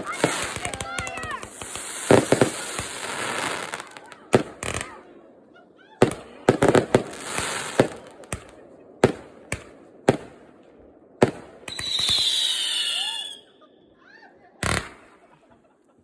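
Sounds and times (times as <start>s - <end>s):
fireworks crackling: 0.0s - 5.2s, 6.0s - 10.6s, 11.2s - 13.5s, 14.6s - 15.4s
fireworks bangs: 0.0s - 5.4s, 6.0s - 13.6s, 14.6s - 15.6s
high falling whistle: 11.7s - 13.7s.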